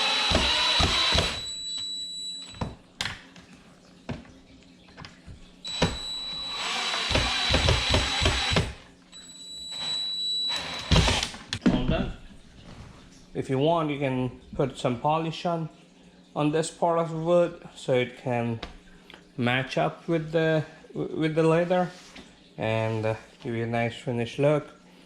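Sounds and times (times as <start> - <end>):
cordless drill motor whine: 0.0 - 1.9, 5.6 - 8.8, 9.6 - 11.4.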